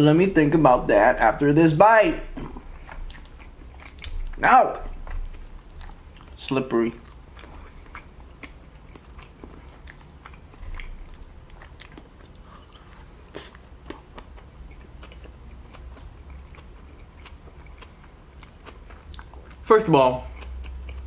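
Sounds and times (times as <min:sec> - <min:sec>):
low steady hum: 0:00.0 - 0:21.0
person chewing food: 0:00.4 - 0:21.0
mouth clicks and smacks: 0:02.3 - 0:06.4.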